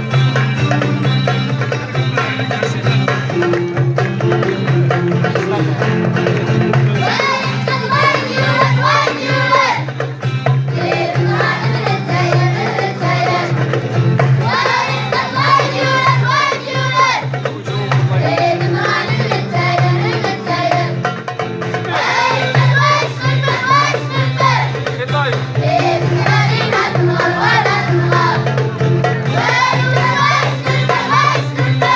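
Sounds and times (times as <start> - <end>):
low accompaniment with light percussion: 0.0 - 31.9
children singing: 7.0 - 10.0, 10.7 - 21.0, 21.8 - 24.9, 25.6 - 31.9.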